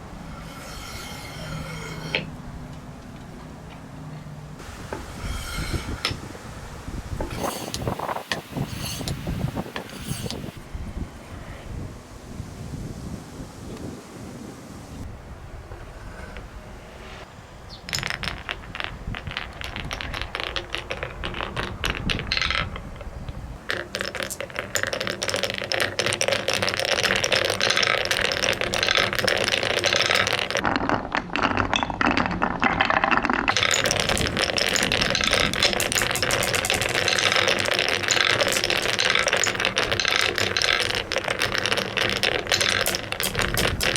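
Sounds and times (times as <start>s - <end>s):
marbles rattling down a marble run: 17.9s - 43.9s.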